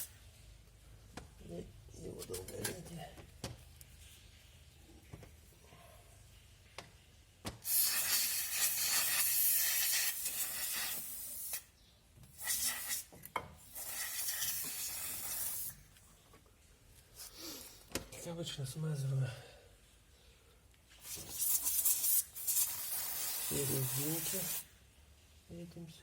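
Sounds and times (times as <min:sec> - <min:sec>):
aerosol can spraying: 0:07.6 - 0:11.7, 0:12.3 - 0:15.8, 0:21.0 - 0:24.7.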